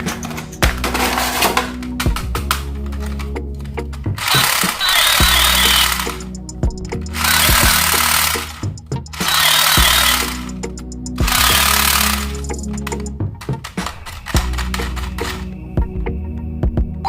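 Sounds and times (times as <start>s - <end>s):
background music: 0.0s - 17.0s
toy gun buzzing bursts: 4.2s - 6.3s, 7.1s - 8.6s, 9.2s - 10.6s, 11.2s - 12.5s.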